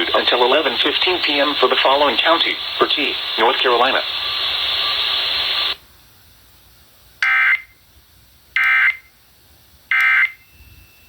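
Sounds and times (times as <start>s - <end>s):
broadcast hiss: 0.0s - 10.0s.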